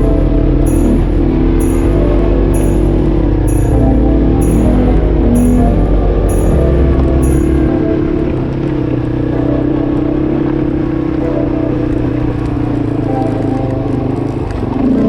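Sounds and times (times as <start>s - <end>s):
music with chimes and bass: 0.0s - 14.9s.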